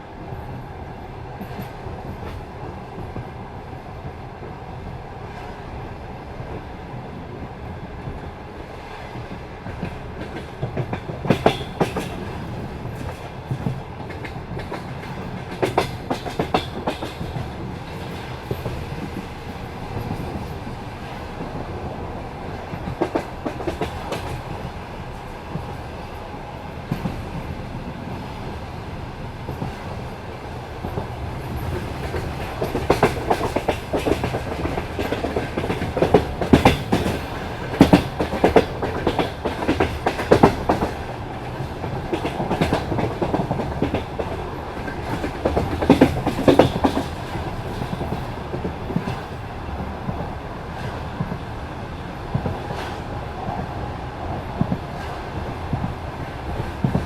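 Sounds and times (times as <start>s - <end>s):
train wheels rumbling: 0.0s - 57.0s
wheels clacking over rail joints: 30.8s - 49.4s.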